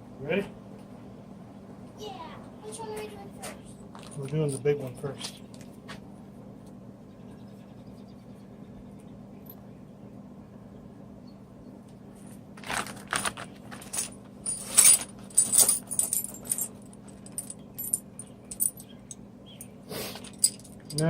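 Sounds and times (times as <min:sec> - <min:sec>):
faint steady hum: 0:00.0 - 0:21.0
small metal parts rattling: 0:12.6 - 0:21.0.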